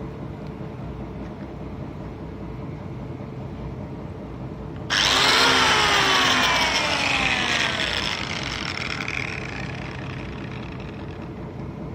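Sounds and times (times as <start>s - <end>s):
angle grinder whining: 4.9s - 11.6s.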